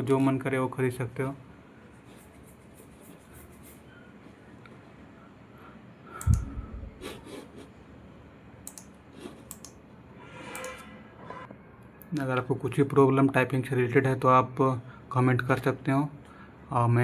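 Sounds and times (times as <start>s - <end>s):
sharp clicks: 6.2s - 6.6s, 8.6s - 9.8s.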